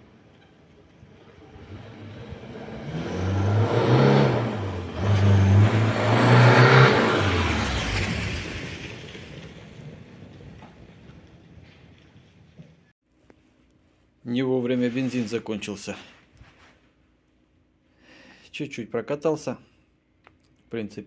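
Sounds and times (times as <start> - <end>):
car engine accelerating: 0.0 - 11.4.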